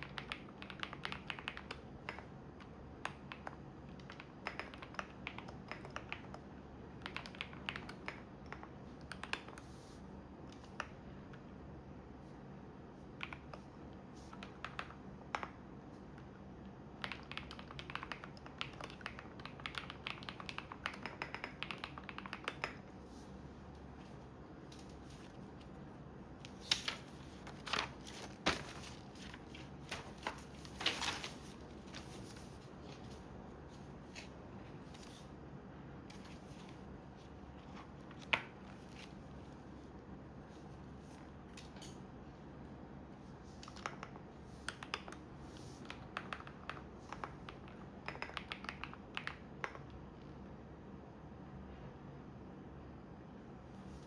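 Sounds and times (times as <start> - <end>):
computer keyboard typing: 0.0 - 9.8, 13.0 - 23.0, 43.6 - 50.0.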